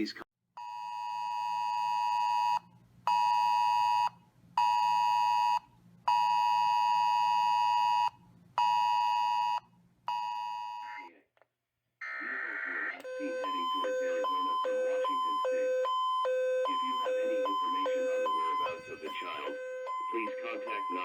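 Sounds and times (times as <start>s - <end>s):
two-pitched alarm tone: 13.0s - 21.0s.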